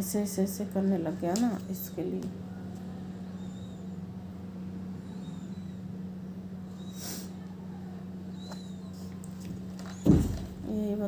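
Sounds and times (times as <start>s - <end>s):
low electrical hum: 0.0s - 11.0s
faint bird chirps: 2.4s - 9.2s
breathy sniff: 6.8s - 7.4s.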